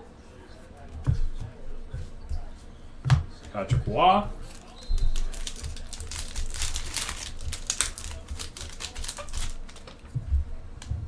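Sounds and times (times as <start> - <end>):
soft knocks: 0.8 - 5.2
cards clicking and rustling: 3.3 - 10.2.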